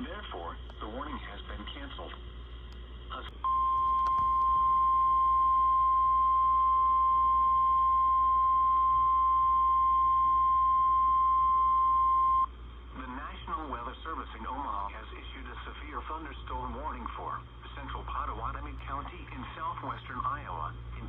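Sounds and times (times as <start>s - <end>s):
faint radio hiss: 0.0s - 3.5s, 12.5s - 21.0s.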